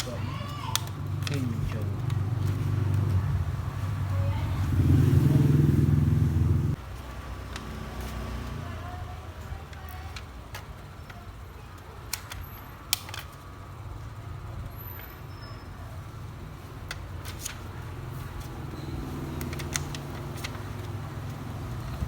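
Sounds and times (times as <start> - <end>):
low rumble: 0.9 - 6.8
clicks of small laptop parts: 9.7 - 13.4.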